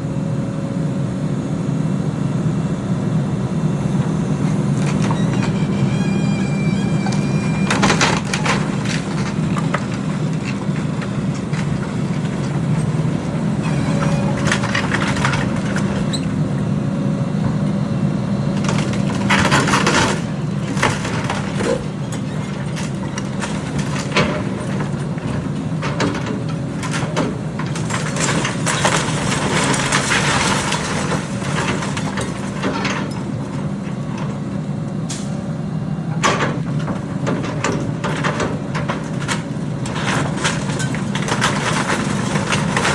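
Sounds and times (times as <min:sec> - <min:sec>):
heavy diesel machinery running: 0:00.0 - 0:42.9
wood cracking and crunching: 0:07.0 - 0:16.1, 0:18.6 - 0:34.3, 0:36.2 - 0:42.9.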